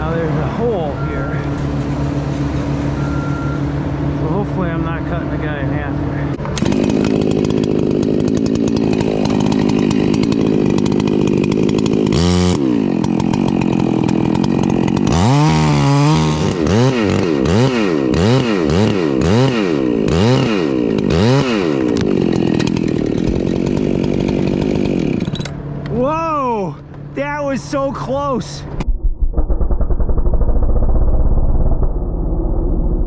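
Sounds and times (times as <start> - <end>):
chainsaw cutting wood: 6.3 - 27.1.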